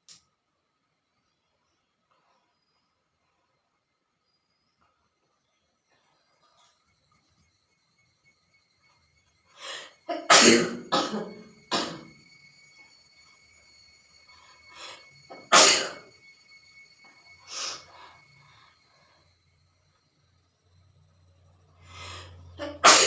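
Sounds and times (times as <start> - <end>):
woman coughing and sneezing: 10.1 - 12.1, 15.5 - 16.0, 22.6 - 23.0.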